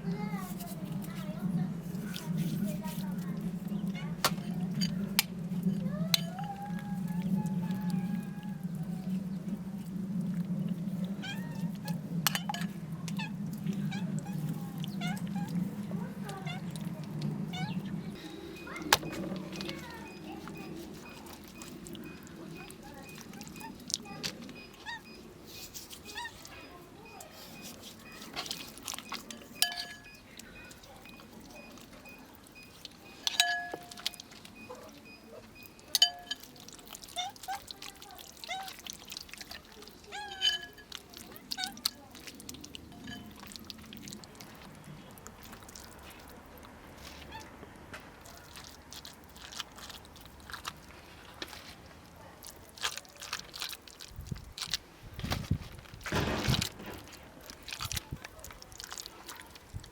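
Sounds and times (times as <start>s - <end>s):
kitchenware clinking: 4.2s - 6.6s, 12.3s - 12.9s, 28.1s - 30.2s, 33.2s - 35.2s, 35.9s - 36.6s, 40.2s - 41.1s
quiet handling sounds: 50.4s - 59.9s.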